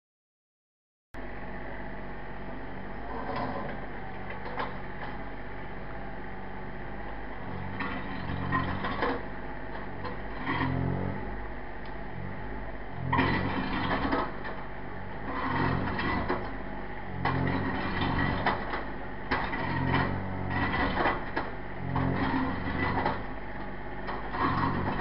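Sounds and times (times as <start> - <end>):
digger clanks and rattles: 3.7 - 5.2, 7.5 - 11.2, 13.0 - 25.0
digger diesel engine running: 6.1 - 25.0.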